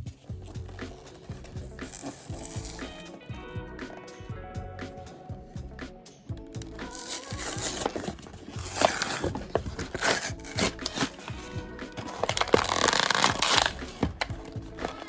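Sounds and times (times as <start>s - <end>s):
packaging being opened: 0.0s - 3.2s, 6.6s - 15.0s
background music: 0.0s - 15.0s.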